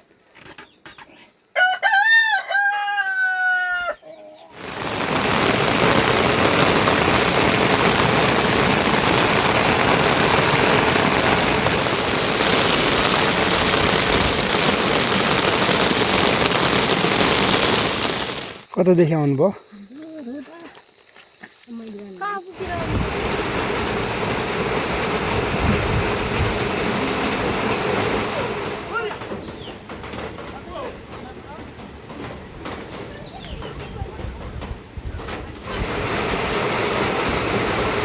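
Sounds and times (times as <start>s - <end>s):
rooster crowing: 1.6s - 4.2s
water hissing: 4.5s - 19.3s, 21.7s - 29.9s, 35.6s - 38.0s.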